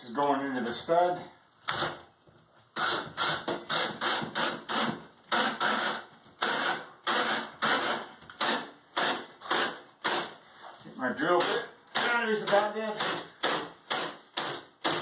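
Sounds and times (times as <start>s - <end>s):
screw being driven into wood: 2.8s - 10.4s.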